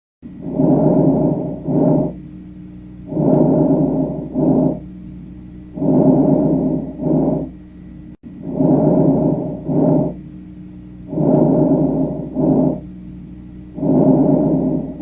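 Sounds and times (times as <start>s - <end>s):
lung breath sounds: 0.4s - 2.2s, 3.0s - 4.9s, 5.7s - 7.6s, 8.3s - 10.2s, 11.0s - 12.9s, 13.7s - 15.0s.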